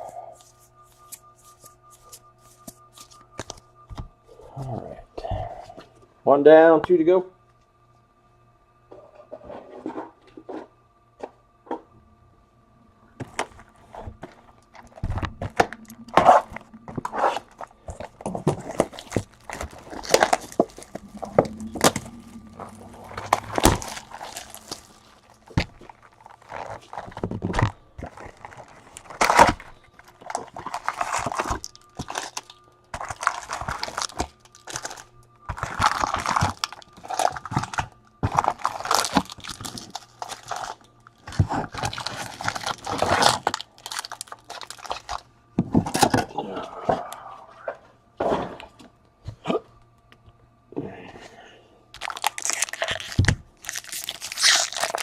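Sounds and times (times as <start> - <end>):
plastic wrapping crinkling: 0.0 - 4.0, 13.2 - 45.3, 51.9 - 55.0.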